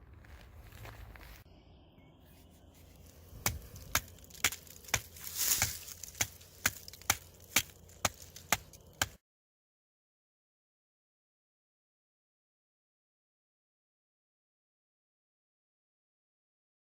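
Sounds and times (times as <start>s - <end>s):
axe chopping wood: 3.3s - 9.2s.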